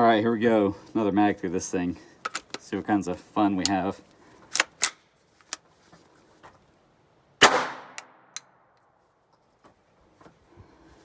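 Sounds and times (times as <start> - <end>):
metallic clicks of gun handling: 2.2 - 2.7, 3.6 - 5.7
pistol shot: 7.4 - 8.3.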